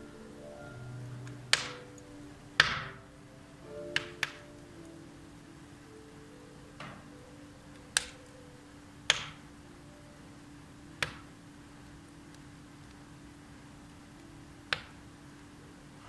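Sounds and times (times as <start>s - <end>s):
firewood crackling: 0.0s - 16.0s
sharp wood pops: 9.1s - 9.4s.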